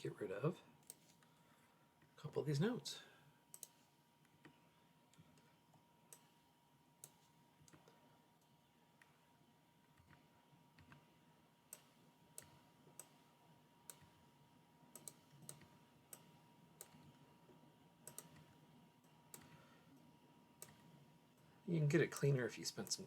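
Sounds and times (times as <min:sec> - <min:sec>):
faint high hum: 0:00.0 - 0:23.0
mouse and keyboard clicks: 0:18.1 - 0:18.5.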